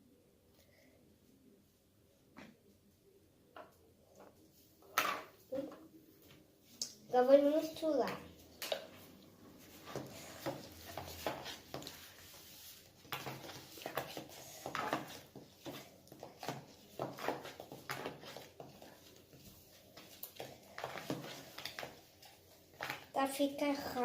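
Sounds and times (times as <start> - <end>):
slime being stirred in a bowl: 6.6 - 24.0.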